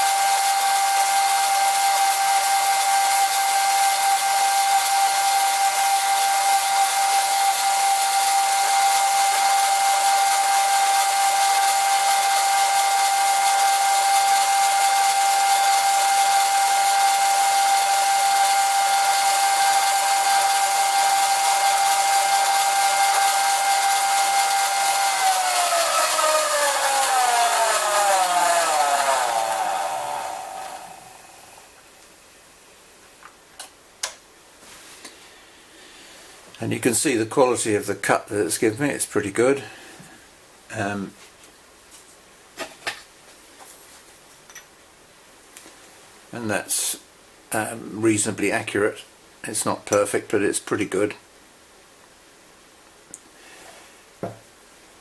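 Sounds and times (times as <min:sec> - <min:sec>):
bandsaw whining: 0:00.0 - 0:31.8.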